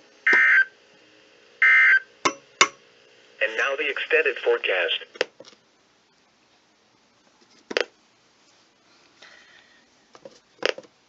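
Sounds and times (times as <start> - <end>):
radio hiss: 3.4 - 5.2.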